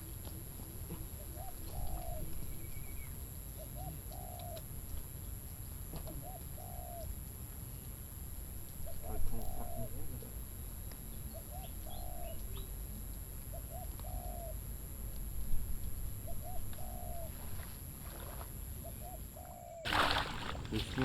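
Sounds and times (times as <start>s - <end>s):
dove cooing: 0.9s - 4.6s, 6.0s - 7.1s, 8.8s - 10.4s, 11.3s - 14.6s, 16.2s - 19.9s
small birds chirping: 0.9s - 7.1s, 8.7s - 14.6s.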